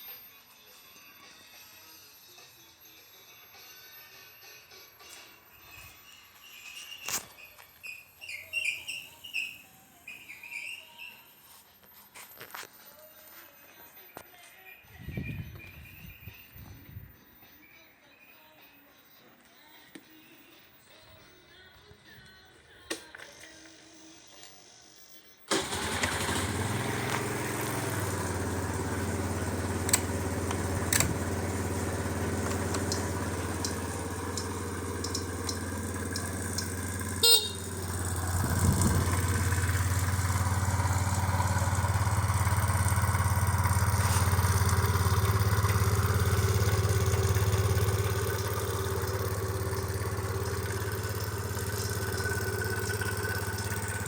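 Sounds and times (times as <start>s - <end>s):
scooter engine starting and running: 6.7s - 11.2s, 25.5s - 54.0s.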